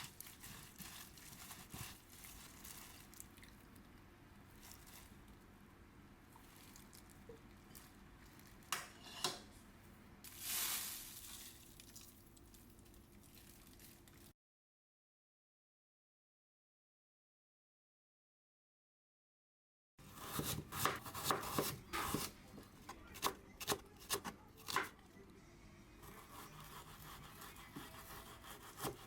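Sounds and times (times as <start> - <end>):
faint stirring and crackling: 0.0 - 9.2, 10.2 - 14.3, 21.5 - 29.0.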